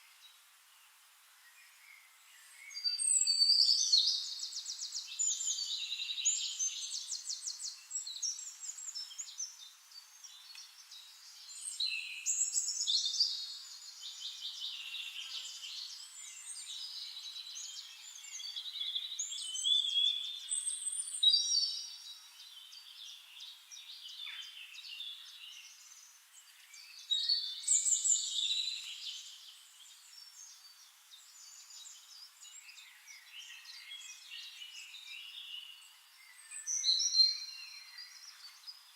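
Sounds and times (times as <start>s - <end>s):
songbirds singing: 0.0s - 38.9s.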